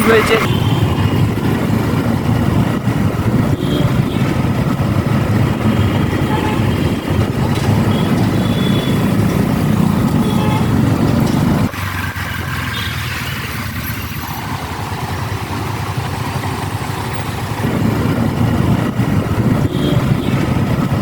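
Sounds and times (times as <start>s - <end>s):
engine low rumble: 0.0s - 21.0s.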